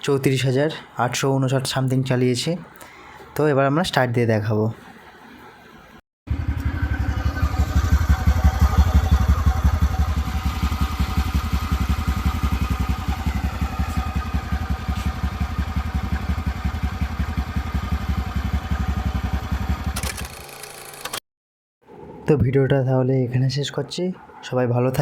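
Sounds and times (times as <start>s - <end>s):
scooter engine idling: 6.3s - 20.2s.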